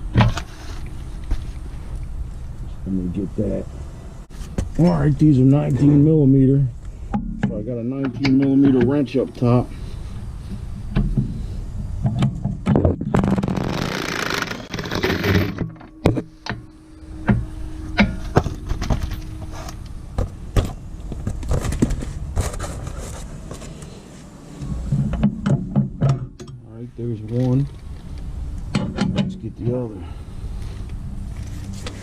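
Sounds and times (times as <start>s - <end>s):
metallic clicks and knocks: 28.6s - 29.4s.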